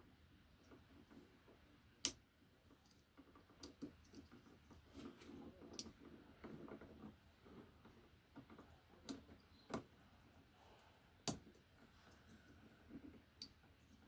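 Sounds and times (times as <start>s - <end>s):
light rustling of wires: 0.6s - 10.5s
sharp clicks of plastic connectors: 2.0s - 2.2s, 11.2s - 11.6s.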